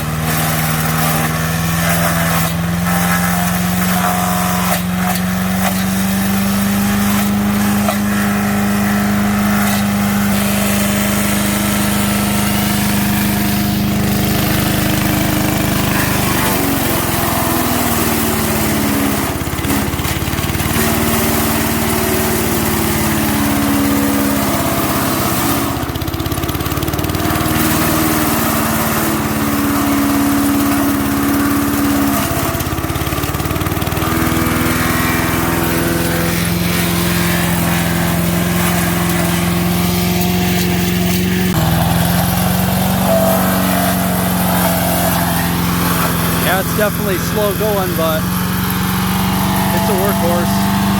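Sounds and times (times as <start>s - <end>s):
wood chipper engine bogging down: 0.0s - 50.9s
branches being shredded: 30.6s - 46.4s.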